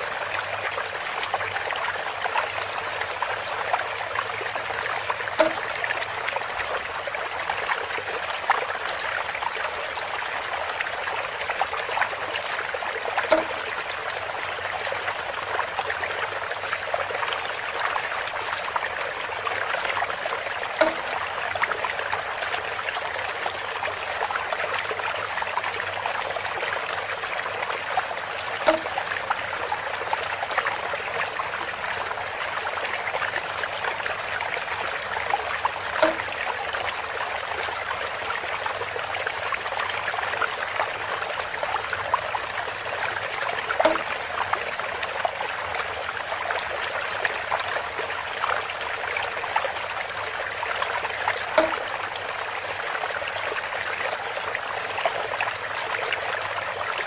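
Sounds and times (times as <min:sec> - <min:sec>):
water trickling through a spout: 0:00.0 - 0:57.0
hollow knock: 0:05.4 - 0:05.8, 0:13.3 - 0:13.6, 0:20.8 - 0:21.1, 0:28.7 - 0:29.0, 0:36.0 - 0:36.3, 0:43.8 - 0:44.2, 0:51.6 - 0:51.9.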